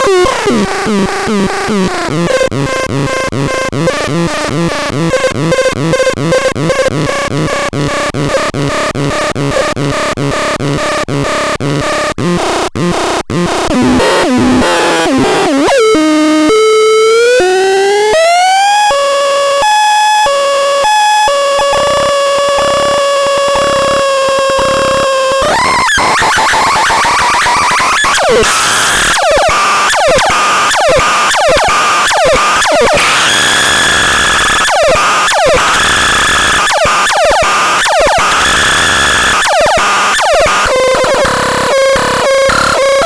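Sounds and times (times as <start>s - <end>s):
electronic siren warbling: 12.4s - 43.0s.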